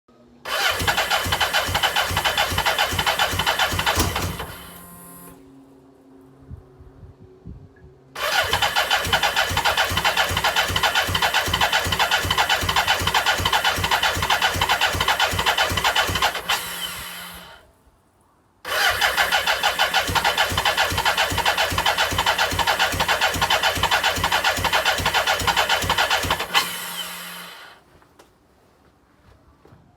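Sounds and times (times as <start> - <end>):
starter motor cranking engine: 0.5 - 5.4, 8.2 - 17.6, 18.7 - 27.8.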